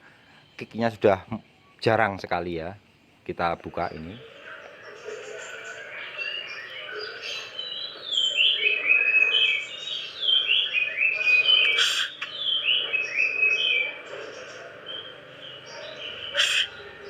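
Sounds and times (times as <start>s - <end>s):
songbird whistling: 4.6s - 14.0s, 14.9s - 17.0s.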